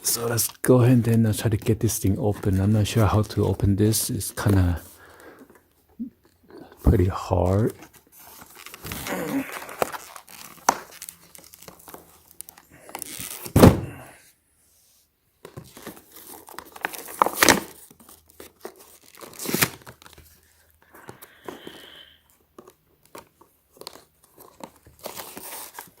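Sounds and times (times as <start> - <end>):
plastic packaging crinkling: 6.9 - 13.6, 15.4 - 21.8, 22.5 - 26.0
plastic packaging ripping: 7.8 - 13.8, 15.6 - 20.4, 22.6 - 26.0
sharp thumps: 13.6 - 14.0.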